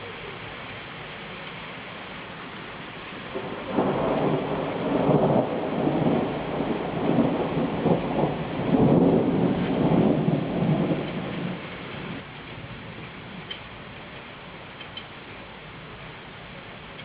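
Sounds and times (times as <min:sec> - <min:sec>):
steady rain: 0:00.0 - 0:17.0
rolling thunder: 0:03.2 - 0:13.4.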